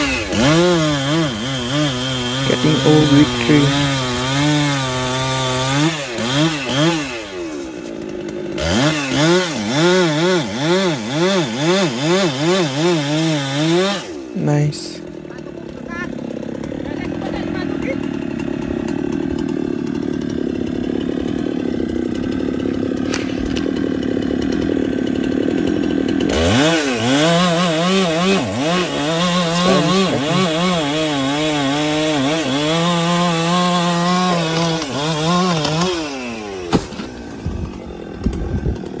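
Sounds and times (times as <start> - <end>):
chainsaw cutting wood: 0.0 - 39.0.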